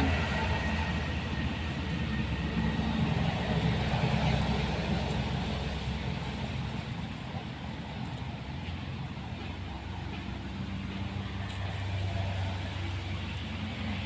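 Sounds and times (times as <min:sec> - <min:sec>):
road traffic rumble: 0:00.0 - 0:14.0.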